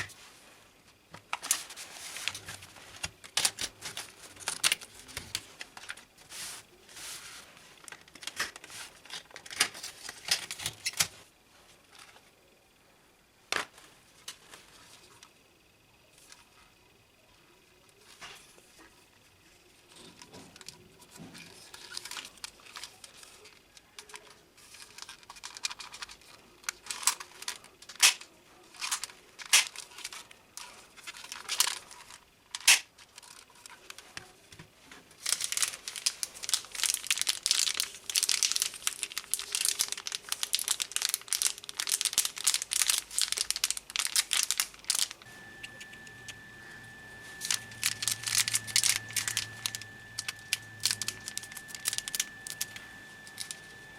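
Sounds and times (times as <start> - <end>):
plastic packaging crinkling: 20.4 - 45.3, 45.9 - 53.9
faint high tone: 45.2 - 53.9
low hum: 45.2 - 53.9.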